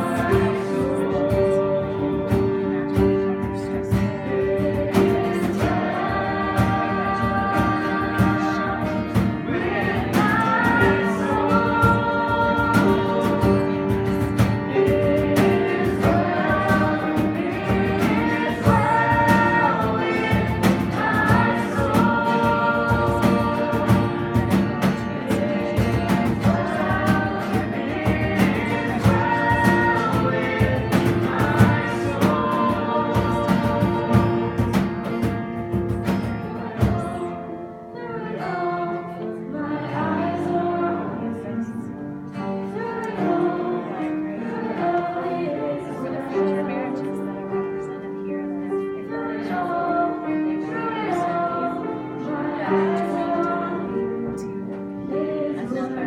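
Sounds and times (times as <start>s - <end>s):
strummed guitar with beat: 0.0s - 41.1s
person singing: 0.0s - 56.0s.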